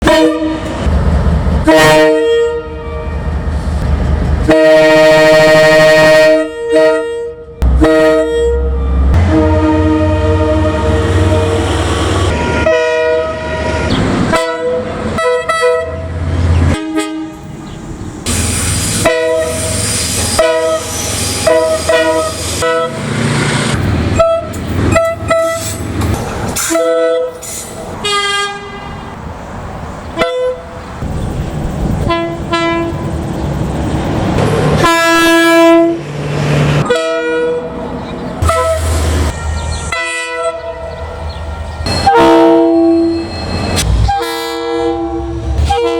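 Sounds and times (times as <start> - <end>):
train horn blasts: 0.0 - 0.9, 1.6 - 3.2, 4.4 - 17.6, 18.3 - 23.0, 24.2 - 25.8, 26.6 - 29.1, 30.2 - 30.8, 32.0 - 33.1, 34.8 - 36.0, 36.8 - 37.8, 38.4 - 45.9.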